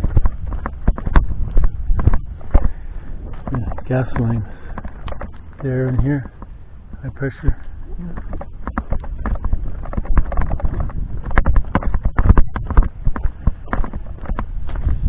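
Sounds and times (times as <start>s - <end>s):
low rumble: 0.0s - 15.0s
sharp knocks and clicks: 0.0s - 15.0s.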